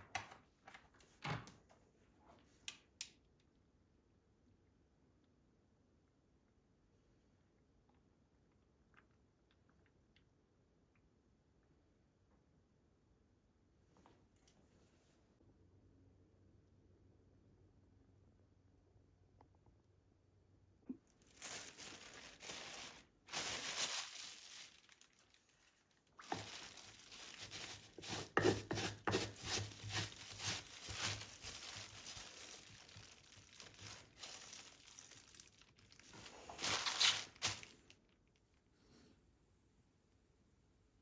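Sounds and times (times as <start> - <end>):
crinkling and rustling: 20.9 - 38.6.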